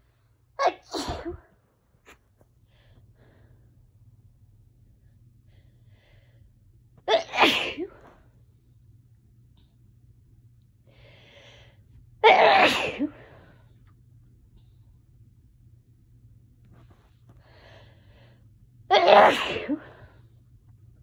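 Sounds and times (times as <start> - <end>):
low steady hum: 0.0 - 21.0
person sneezing: 0.6 - 1.5, 7.1 - 8.2, 12.2 - 13.3, 18.9 - 20.0.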